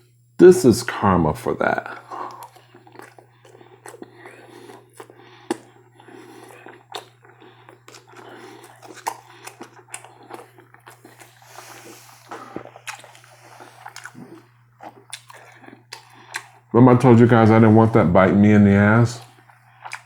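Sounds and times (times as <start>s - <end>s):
chewing with wet clicks: 2.0s - 16.8s, 19.1s - 20.0s
lip smacks: 2.1s - 16.7s, 19.2s - 20.0s.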